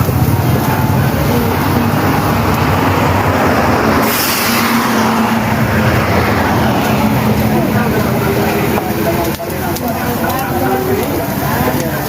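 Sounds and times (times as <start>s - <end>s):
sudden hiss: 0.0s - 9.3s
street noise: 0.0s - 12.0s
vehicle engine hum: 0.0s - 12.0s.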